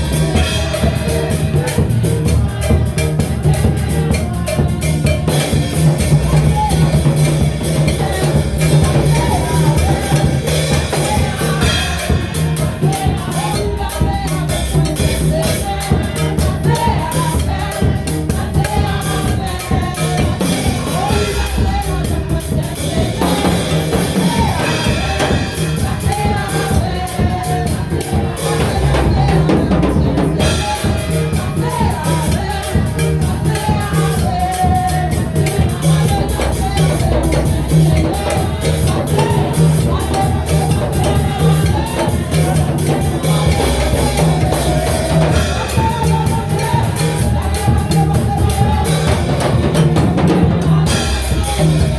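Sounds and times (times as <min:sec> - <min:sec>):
drum kit steady beat: 0:00.0 - 0:51.9
gospel worship music: 0:00.0 - 0:51.9.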